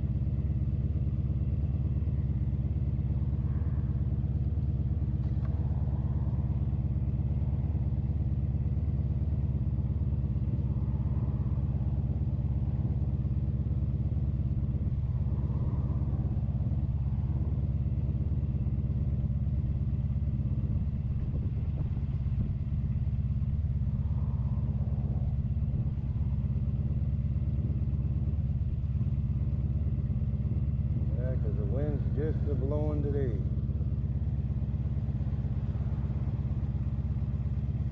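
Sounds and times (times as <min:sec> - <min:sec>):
motorcycle engine running: 0:00.0 - 0:37.9
wind buffeting microphone: 0:20.7 - 0:28.8.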